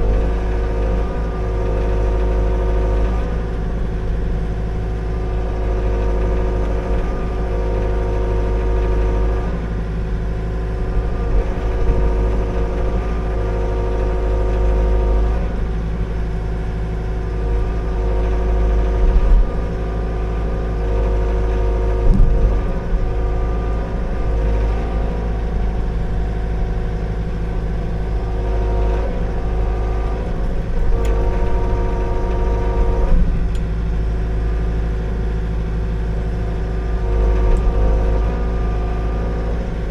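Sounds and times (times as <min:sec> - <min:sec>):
excavator diesel engine working: 0:00.0 - 0:39.9
sharp clunks: 0:22.0 - 0:23.0.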